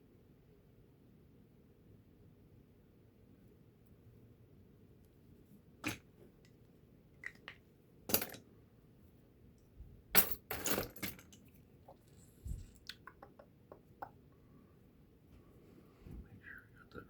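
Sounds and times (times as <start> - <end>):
small metal tools clinking: 8.1 - 8.4, 10.2 - 11.4.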